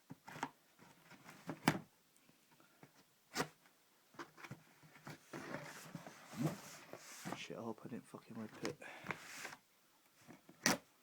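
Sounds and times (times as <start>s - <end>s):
packaging scraping and rustling: 4.2s - 7.5s.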